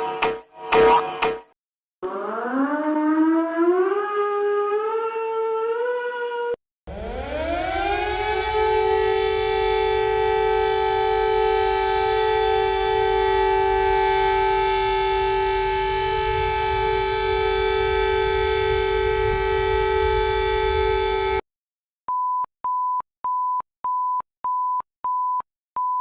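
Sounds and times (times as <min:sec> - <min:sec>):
civil defense siren: 0:02.0 - 0:21.4.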